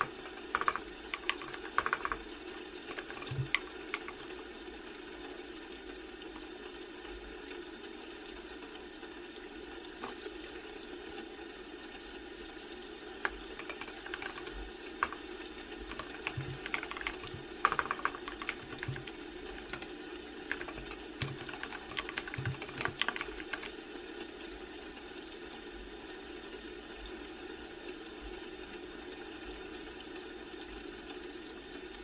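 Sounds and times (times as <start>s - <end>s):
keyboard typing clicks: 0.0s - 4.4s, 13.2s - 23.8s.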